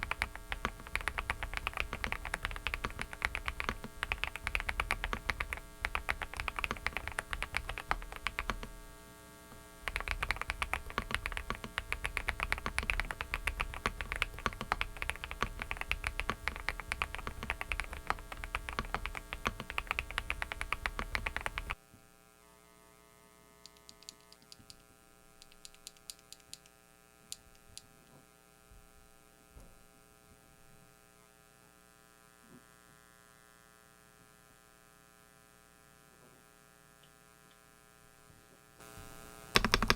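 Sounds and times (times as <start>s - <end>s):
mechanical keyboard typing: 0.0s - 8.7s, 9.9s - 21.8s, 39.6s - 39.9s
electrical hum: 0.0s - 21.9s, 35.9s - 39.9s.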